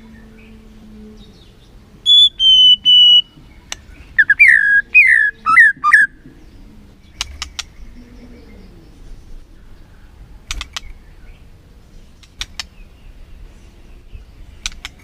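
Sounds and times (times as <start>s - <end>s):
bird singing whistled notes: 1.2s - 7.2s
sharp clicks: 7.1s - 7.8s, 10.5s - 11.0s, 12.2s - 12.8s, 14.6s - 15.0s.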